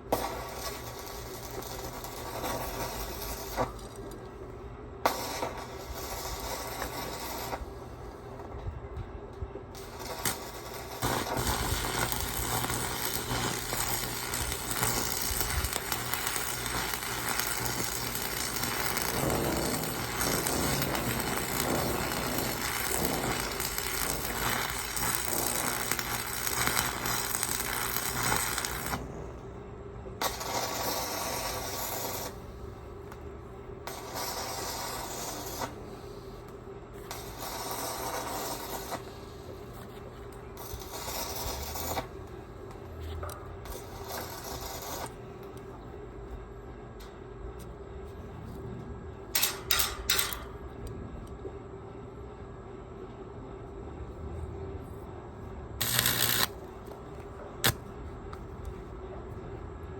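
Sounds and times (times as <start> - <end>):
electric arc welding crackling: 0.0 - 4.4, 5.0 - 8.3, 9.8 - 29.4, 30.2 - 32.5, 33.8 - 35.8, 37.0 - 39.6, 40.3 - 42.3, 43.6 - 45.2, 49.4 - 50.6, 55.8 - 56.8, 57.6 - 57.8
steady low hum: 0.0 - 59.9.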